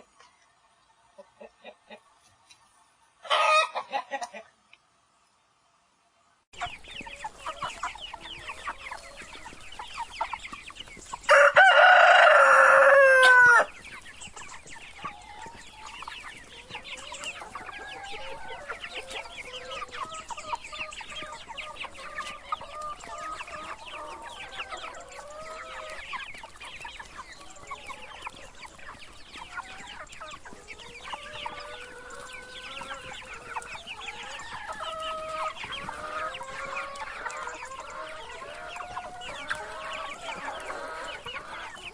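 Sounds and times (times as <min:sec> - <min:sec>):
chickens clucking: 0:00.0 - 0:05.0, 0:06.1 - 0:41.9
rooster crowing: 0:11.3 - 0:13.7.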